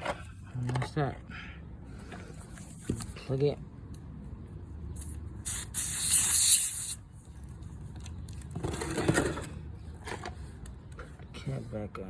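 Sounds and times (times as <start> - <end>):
air hissing from tire valve: 5.0 - 7.0
rubbing and scraping at valve: 5.0 - 7.0.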